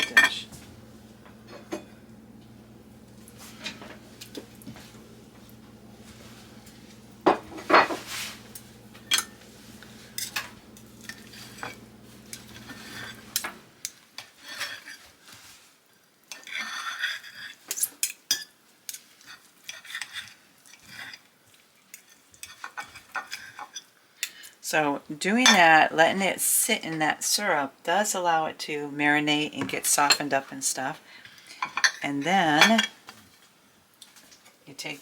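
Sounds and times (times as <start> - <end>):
steady low hum: 0.0 - 13.7.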